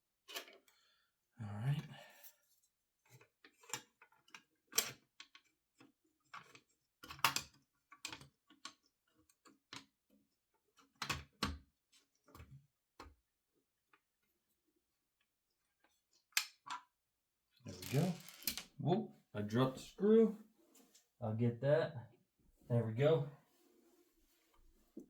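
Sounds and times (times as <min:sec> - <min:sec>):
small parts clicking and knocking: 0:03.1 - 0:09.9, 0:17.7 - 0:18.8.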